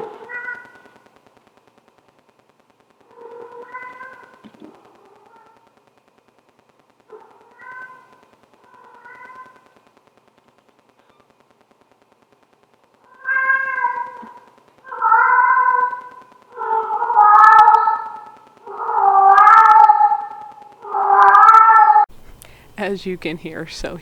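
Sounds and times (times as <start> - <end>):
cat meowing: 0.0 - 0.8, 13.1 - 22.0.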